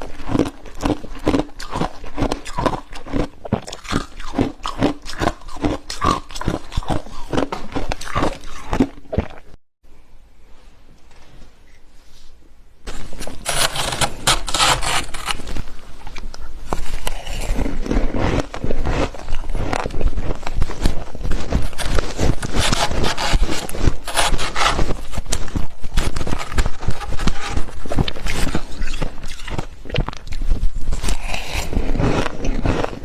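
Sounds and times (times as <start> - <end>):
frost crunching and crackling: 12.9 - 33.0.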